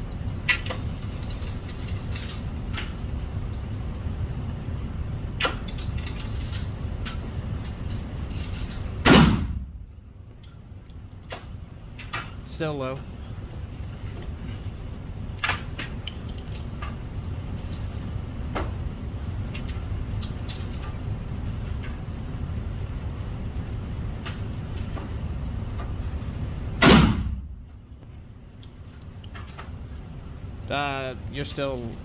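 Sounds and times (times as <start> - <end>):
steady low rumble: 0.0 - 32.0
loud gunshot: 9.0 - 9.6, 26.8 - 27.4.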